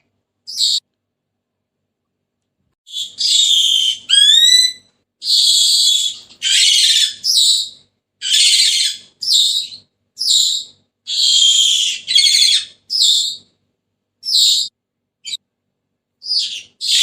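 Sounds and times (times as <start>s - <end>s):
parrot screeching: 0.5s - 0.8s, 2.9s - 13.4s, 14.2s - 14.7s, 16.2s - 17.0s.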